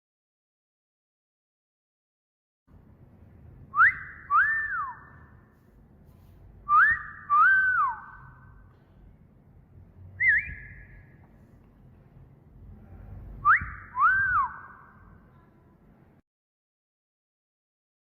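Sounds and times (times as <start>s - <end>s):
wolf whistle: 3.7s - 5.3s, 6.7s - 8.5s, 10.2s - 11.1s, 13.4s - 15.0s
short wavering whistle: 3.7s - 5.4s, 6.6s - 8.6s, 10.2s - 11.2s, 13.3s - 15.1s.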